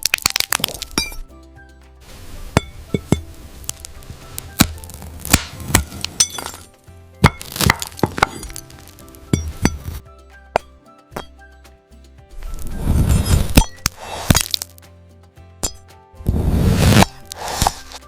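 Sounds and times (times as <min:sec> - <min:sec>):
background music: 0:00.0 - 0:18.0
knife cracking glass: 0:04.6 - 0:09.8, 0:13.2 - 0:14.7.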